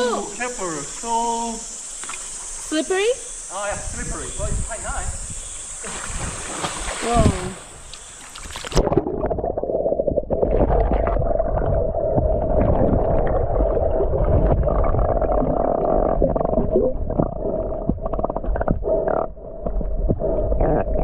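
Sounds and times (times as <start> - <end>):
swimming strokes knocking underwater: 5.8 - 21.0
underwater bubbling: 5.9 - 21.0.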